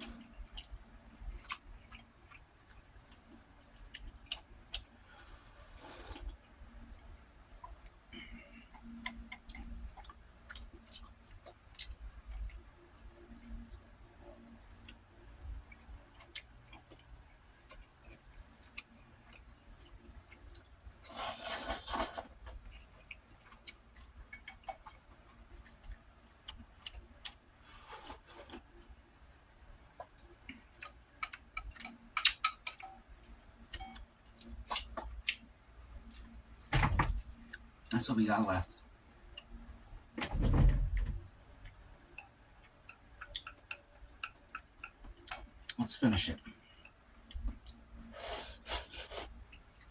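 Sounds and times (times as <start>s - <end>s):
chewing and mouth clicks: 0.0s - 5.0s, 6.0s - 21.0s, 22.6s - 27.6s, 30.0s - 33.0s, 33.6s - 36.4s, 41.6s - 45.8s.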